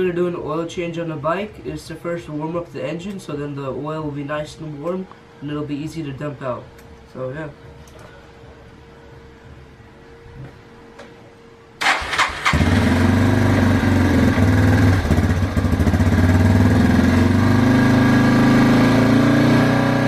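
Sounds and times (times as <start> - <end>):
dirt bike engine starting and idling: 11.8 - 20.0.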